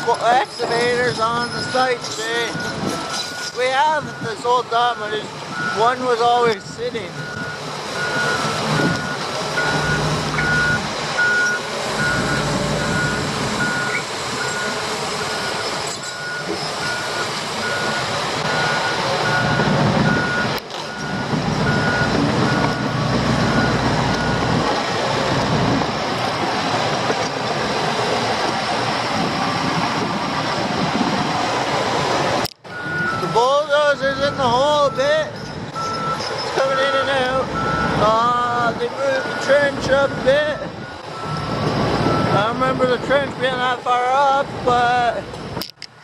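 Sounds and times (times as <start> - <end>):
diesel engine working: 0.0 - 46.0
reverse alarm beeping: 1.4 - 6.5, 7.2 - 24.5, 32.7 - 36.4, 39.1 - 42.5.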